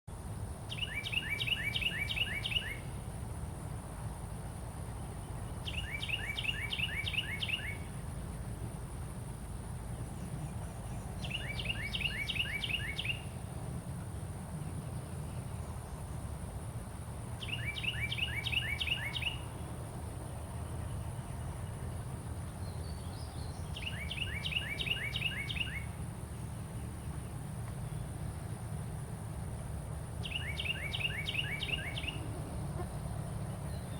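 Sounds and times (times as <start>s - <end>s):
wren singing: 0.7s - 2.9s, 5.6s - 8.0s, 10.2s - 13.4s, 17.4s - 19.6s, 20.4s - 26.0s, 30.2s - 32.3s.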